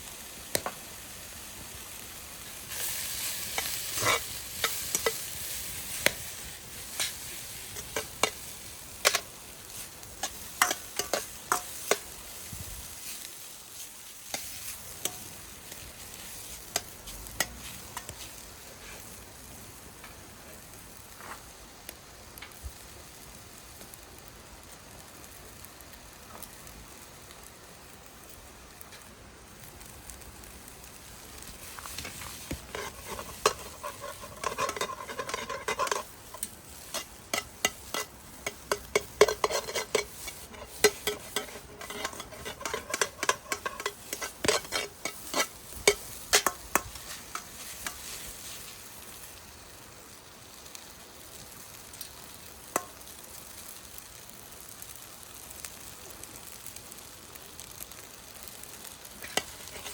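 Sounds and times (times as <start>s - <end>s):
rice sizzling in a frying pan: 0.0s - 59.9s
utensil clacking and scraping pan: 2.7s - 12.2s, 14.3s - 19.1s, 31.5s - 48.8s, 59.2s - 59.9s.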